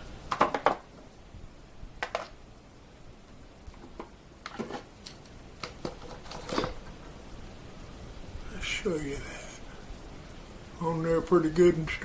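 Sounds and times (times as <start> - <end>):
small tools clicking and scraping: 4.5 - 6.9.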